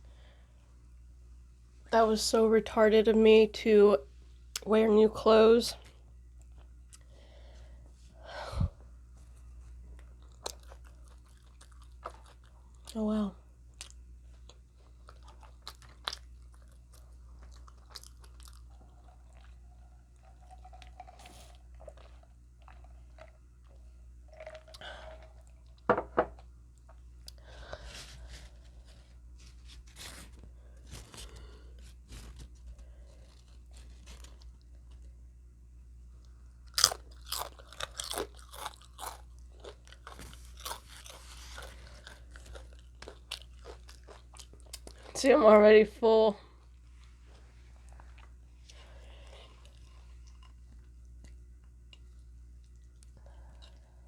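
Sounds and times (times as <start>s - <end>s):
person chewing crunchy food: 9.6s - 13.0s, 13.7s - 35.2s, 36.2s - 45.2s, 46.9s - 54.0s.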